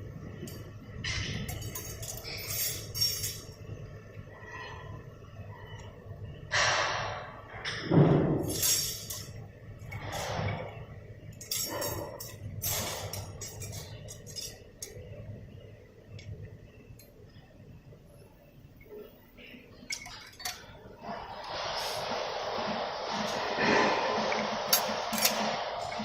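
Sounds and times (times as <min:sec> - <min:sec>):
hissing air bursts: 0:20.9 - 0:26.0.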